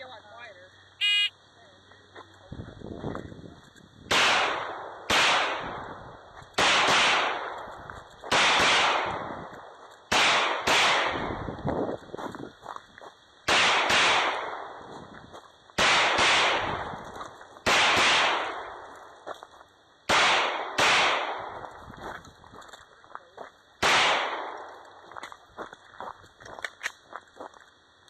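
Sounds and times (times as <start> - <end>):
gunshots: 4.1 - 11.6, 13.5 - 14.9, 15.8 - 19.2, 20.0 - 21.9, 23.8 - 24.9.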